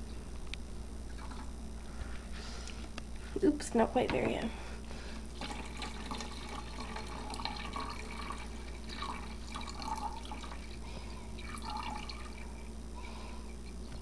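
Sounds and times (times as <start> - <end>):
water pouring into a tank: 5.4 - 13.6.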